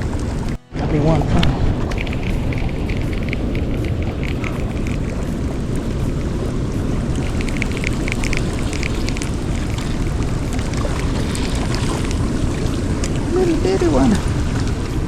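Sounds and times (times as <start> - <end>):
water rushing through spillway: 0.0 - 15.0.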